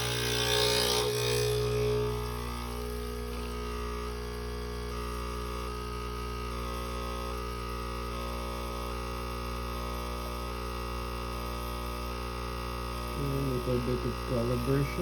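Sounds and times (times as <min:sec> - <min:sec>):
espresso machine pump droning: 0:00.0 - 0:15.0.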